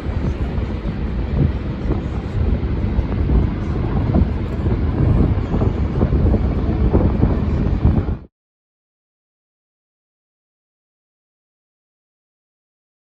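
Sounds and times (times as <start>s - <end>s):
steady low rumble: 0.0s - 8.3s
wind buffeting microphone: 0.0s - 8.3s.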